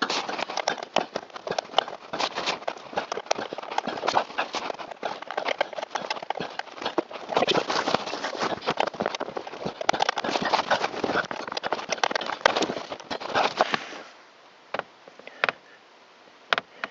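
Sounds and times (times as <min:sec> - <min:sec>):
hand tools and parts rattling: 0:00.0 - 0:14.0.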